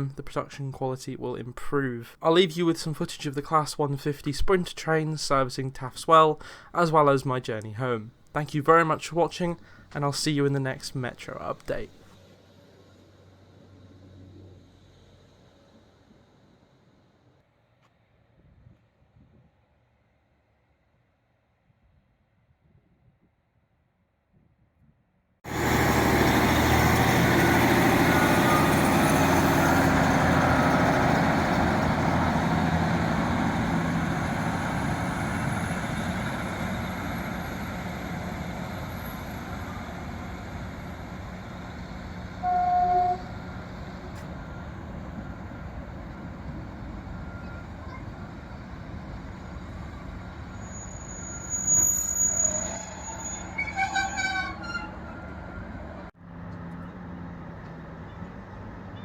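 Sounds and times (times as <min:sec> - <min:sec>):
diesel train passing: 0:00.0 - 0:17.4, 0:25.5 - 0:59.0
train horn toot: 0:42.4 - 0:43.5, 0:52.5 - 0:55.8.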